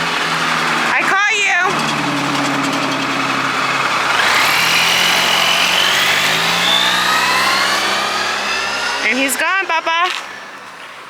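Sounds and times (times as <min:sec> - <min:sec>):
motorcycle engine accelerating: 0:00.0 - 0:10.4.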